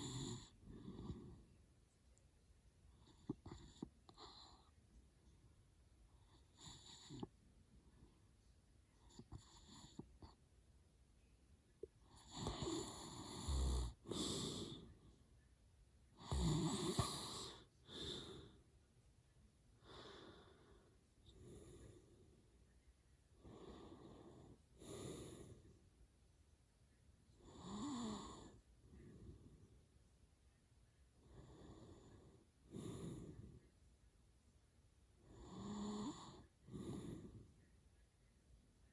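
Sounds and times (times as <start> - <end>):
man snoring: 12.2 - 14.8, 16.2 - 18.4, 27.5 - 28.5, 35.4 - 37.3.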